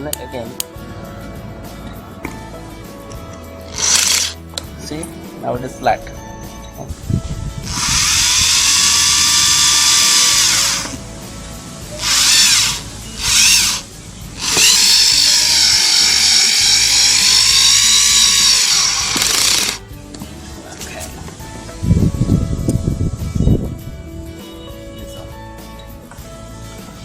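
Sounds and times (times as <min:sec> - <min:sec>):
power screwdriver motor whining: 0:03.7 - 0:04.4, 0:07.7 - 0:11.0, 0:12.0 - 0:13.8, 0:14.4 - 0:19.8.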